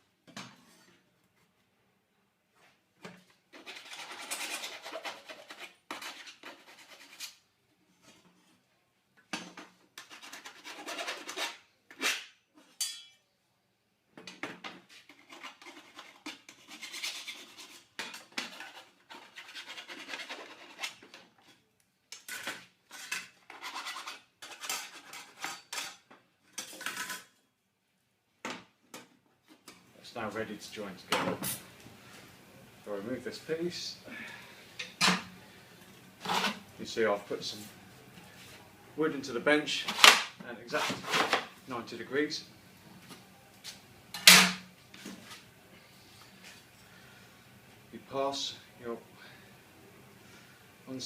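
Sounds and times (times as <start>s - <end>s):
metal scraping on metal: 3.5s - 7.4s, 14.9s - 21.6s, 22.3s - 27.3s, 36.2s - 36.6s.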